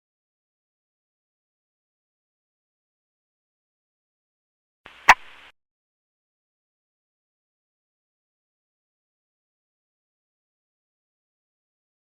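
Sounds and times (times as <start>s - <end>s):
radio static burst: 4.9s - 5.5s
sharp click: 5.1s - 5.4s.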